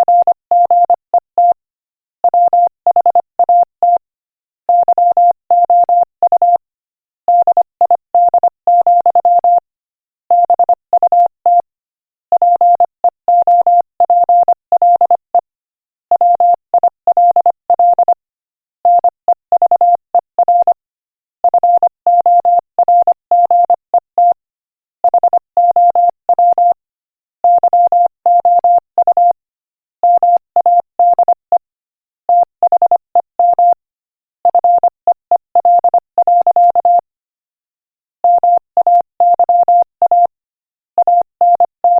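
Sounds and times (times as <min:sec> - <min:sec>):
morse code beeps: 0:00.0 - 0:01.6, 0:02.3 - 0:04.0, 0:04.7 - 0:06.6, 0:07.3 - 0:09.6, 0:10.3 - 0:11.7, 0:12.4 - 0:15.5, 0:16.2 - 0:18.2, 0:18.9 - 0:20.8, 0:21.4 - 0:24.4, 0:25.0 - 0:26.8, 0:27.4 - 0:29.4, 0:30.0 - 0:31.7, 0:32.3 - 0:33.8, 0:34.4 - 0:37.1, 0:38.2 - 0:40.4, 0:41.0 - 0:41.9.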